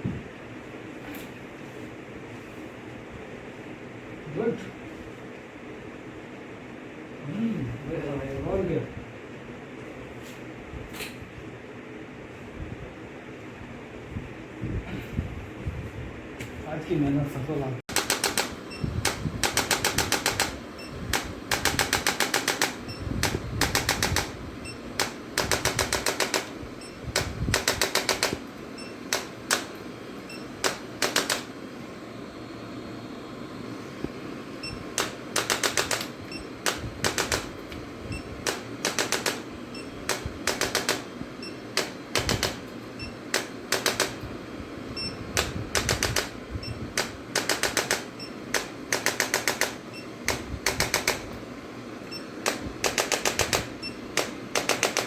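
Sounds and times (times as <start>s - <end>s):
rapid mechanical clicking: 17.9s - 29.8s, 30.6s - 31.5s, 34.9s - 41.1s, 41.7s - 44.2s, 45.4s - 51.4s, 52.0s - 55.0s.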